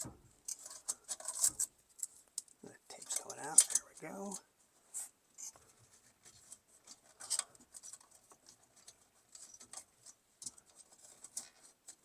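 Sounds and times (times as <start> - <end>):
small irregular clicks: 0.0 - 4.5, 5.4 - 12.0
wiring scratching and rustling: 0.0 - 12.0.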